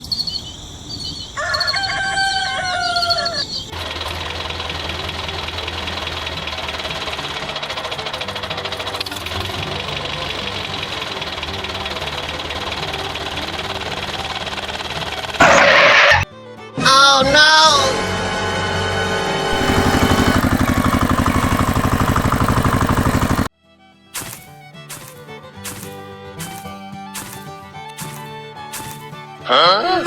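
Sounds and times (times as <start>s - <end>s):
rooster crowing: 0.7s - 3.8s
engine running: 2.3s - 16.6s, 17.5s - 23.5s.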